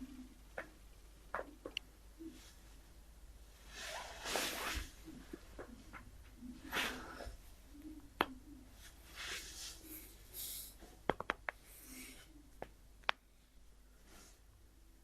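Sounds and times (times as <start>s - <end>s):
soft breaths: 2.2s - 14.8s.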